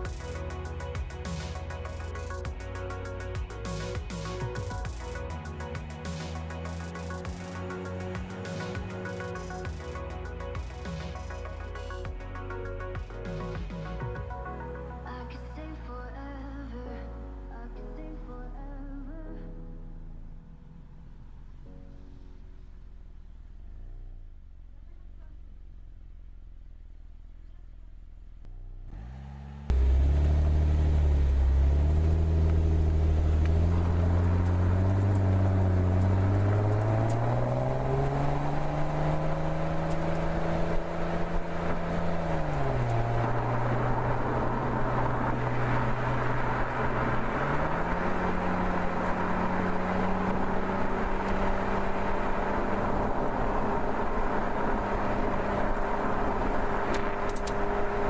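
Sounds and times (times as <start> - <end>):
car engine accelerating: 0.0 - 15.2, 28.4 - 58.0.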